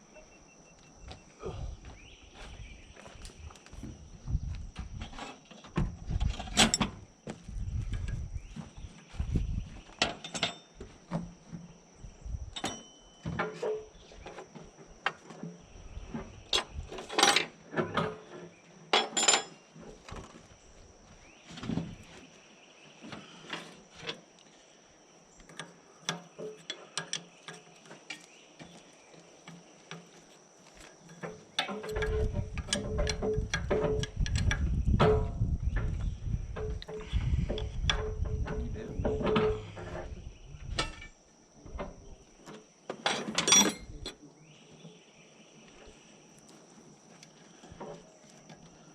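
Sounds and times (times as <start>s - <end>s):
metallic clinks and knocks: 10.0s - 10.8s, 18.9s - 19.6s, 31.0s - 35.4s, 43.0s - 44.2s.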